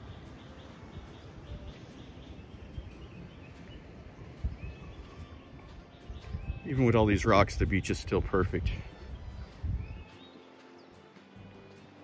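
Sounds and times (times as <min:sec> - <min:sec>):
faint bird chirps: 0:00.0 - 0:08.0
seaside ambience: 0:00.0 - 0:12.0.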